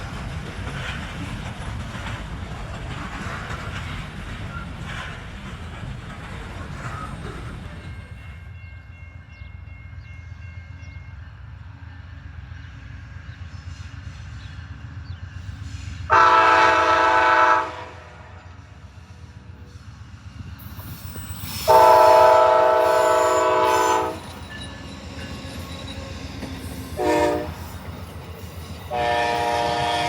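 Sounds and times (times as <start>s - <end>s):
low rumble of a train: 0.0s - 30.0s
train horn blast: 16.1s - 18.6s, 21.7s - 24.2s, 27.0s - 27.6s, 28.9s - 30.0s.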